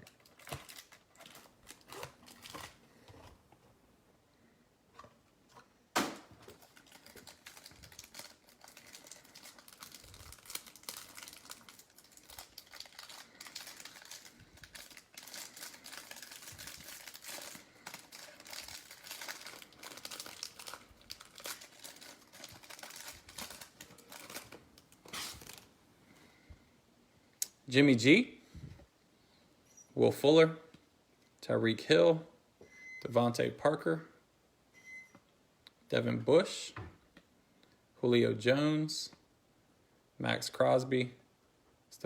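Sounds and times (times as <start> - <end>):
foil wrapper tearing and crinkling: 0.0 - 2.8, 6.4 - 25.7.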